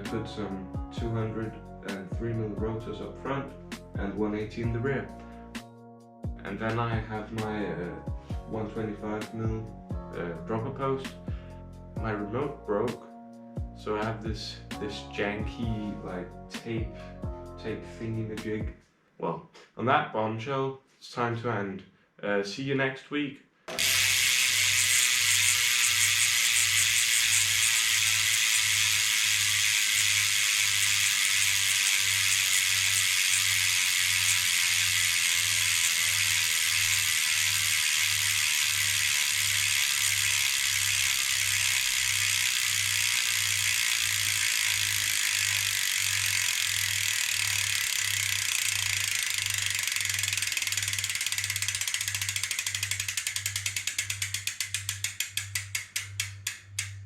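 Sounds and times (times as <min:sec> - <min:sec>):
bicycle freehub ticking: 0:23.7 - 0:57.0.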